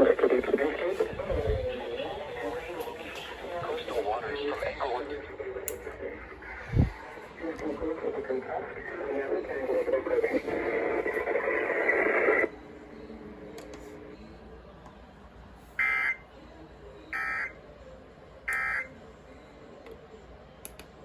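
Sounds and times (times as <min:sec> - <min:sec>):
loud noisy radio sound: 0:00.0 - 0:14.4.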